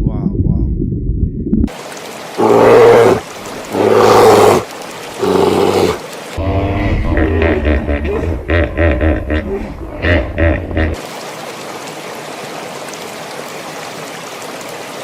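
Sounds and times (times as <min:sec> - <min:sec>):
large animal roaring: 0:05.2 - 0:11.0.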